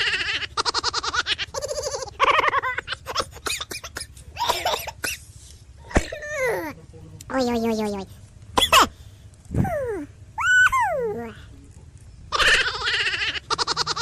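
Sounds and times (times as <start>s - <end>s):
cat chattering and calling: 12.3s - 14.0s.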